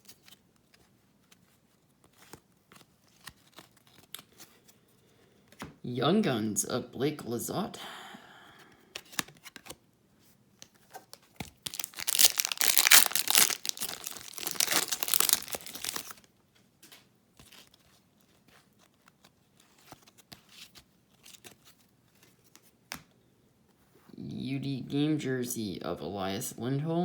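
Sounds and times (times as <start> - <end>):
soft clicks of cards handled: 0.0 - 4.8, 5.4 - 5.8, 8.7 - 9.8, 16.5 - 23.9
foil pack tearing and crinkling: 11.4 - 16.3.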